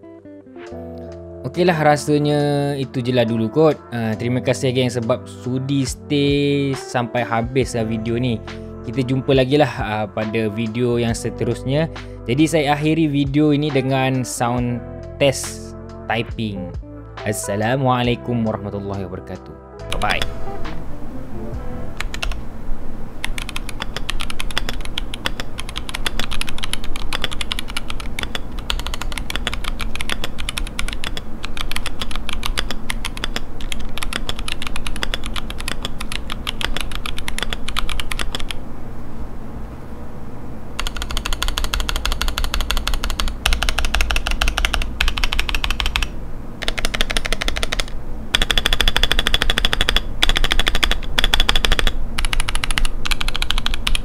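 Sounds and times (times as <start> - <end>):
mechanical keyboard typing: 22.0 - 22.4, 23.2 - 38.6, 40.8 - 54.0.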